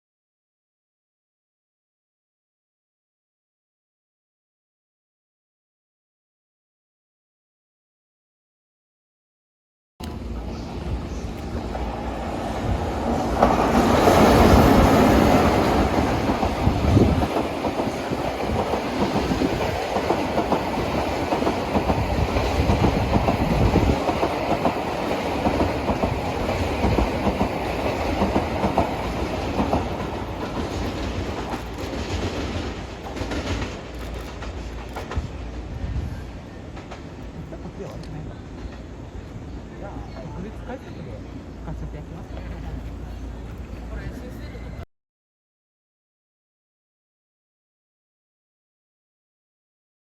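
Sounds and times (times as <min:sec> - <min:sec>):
train wheels clattering over rail joints: 0:13.0 - 0:35.7.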